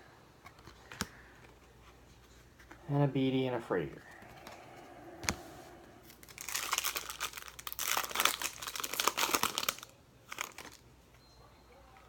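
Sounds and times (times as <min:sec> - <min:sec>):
wrapper tearing and crinkling: 0:06.1 - 0:10.8.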